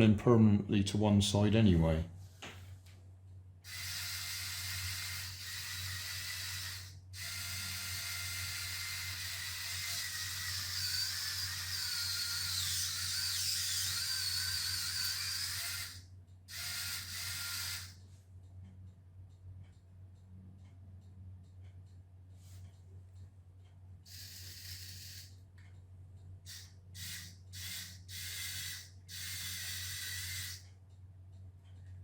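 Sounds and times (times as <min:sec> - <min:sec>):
small gear motors whirring: 0:03.7 - 0:18.0, 0:24.1 - 0:25.4, 0:26.5 - 0:30.7.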